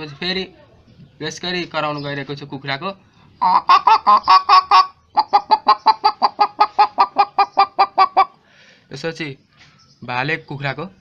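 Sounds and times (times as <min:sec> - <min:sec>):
person imitating hen clucking: 0:03.4 - 0:08.3.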